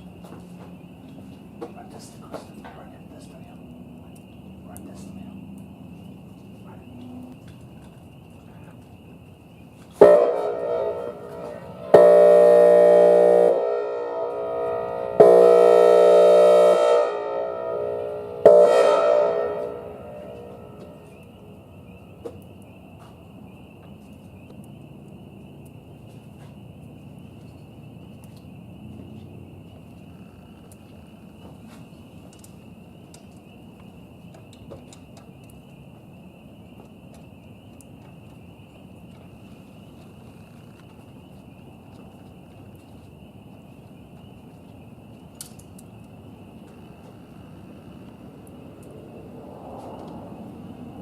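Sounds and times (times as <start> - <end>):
electronic siren air-horn blasts: 10.0 - 21.4.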